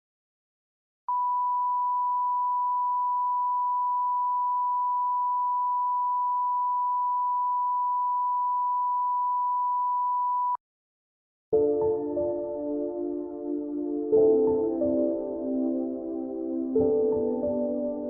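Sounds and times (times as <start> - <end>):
ambient music: 11.6 - 18.0.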